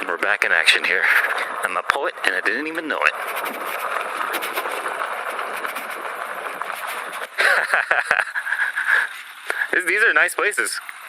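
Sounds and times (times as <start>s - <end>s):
bike tyres on dirt trail: 0.0s - 11.0s
loud choppy burst: 2.4s - 9.1s
wind rushing: 3.1s - 7.4s.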